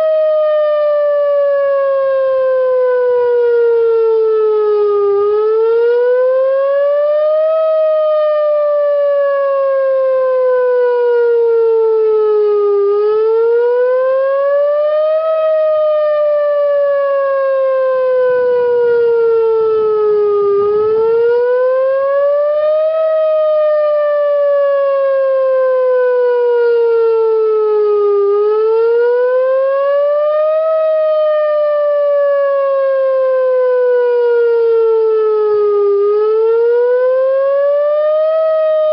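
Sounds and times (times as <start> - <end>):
rising and falling siren wail: 0.0 - 38.9.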